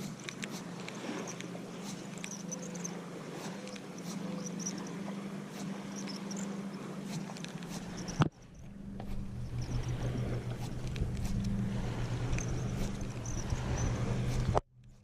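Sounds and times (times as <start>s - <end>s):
small birds chirping: 0.0s - 10.0s
low motor hum: 0.0s - 15.0s.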